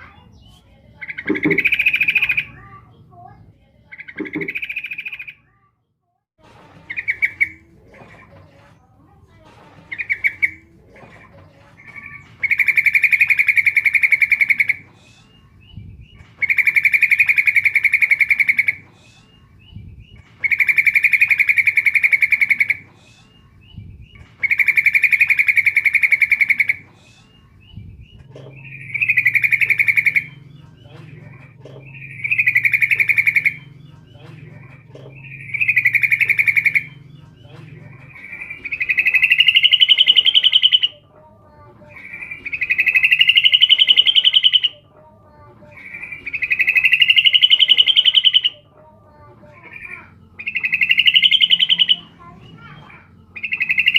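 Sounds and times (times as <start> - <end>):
bird buzzy chattering call: 0.0 - 2.8, 3.9 - 5.4, 28.0 - 41.0, 41.6 - 44.8, 45.4 - 48.6, 49.2 - 53.9.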